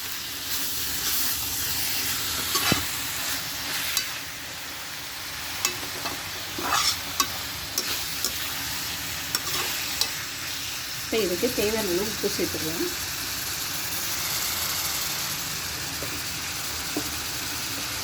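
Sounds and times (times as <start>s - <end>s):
food sizzling in oil: 0.0s - 18.0s
spatula scraping a pan: 5.6s - 10.2s.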